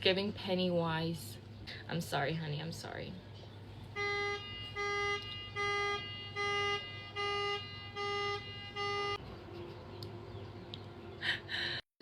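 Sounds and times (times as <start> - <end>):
car alarm horn blasts: 3.9 - 9.2.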